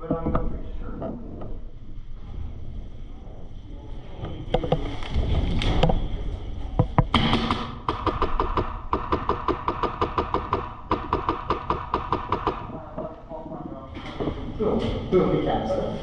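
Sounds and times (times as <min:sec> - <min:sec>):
knocks and handling noises: 0:04.2 - 0:15.1.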